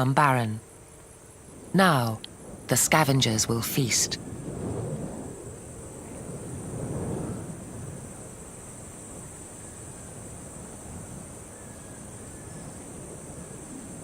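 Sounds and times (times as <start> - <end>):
high insect drone: 0.0 - 14.0
low background hiss: 0.0 - 14.0.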